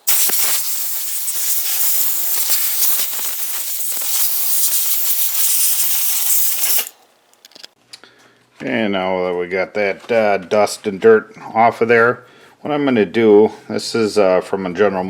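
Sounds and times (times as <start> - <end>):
compressed air hissing: 0.0 - 7.0.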